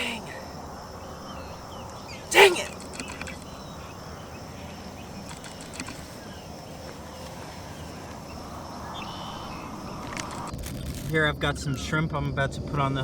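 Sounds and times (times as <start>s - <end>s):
faint bird chirps: 0.0s - 10.1s
outdoor background noise: 0.0s - 13.0s.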